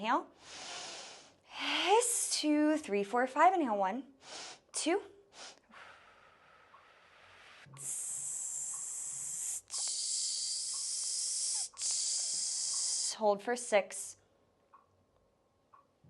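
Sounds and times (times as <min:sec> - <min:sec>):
woman breathing in: 0:05.3 - 0:13.2
woman hissing exhale: 0:07.1 - 0:13.2.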